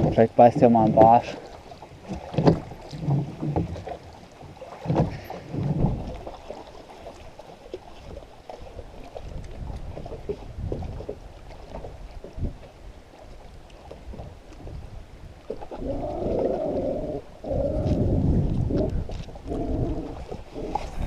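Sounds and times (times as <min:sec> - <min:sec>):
oars pulling through water: 0:00.0 - 0:21.0
low wind rumble: 0:08.8 - 0:21.0.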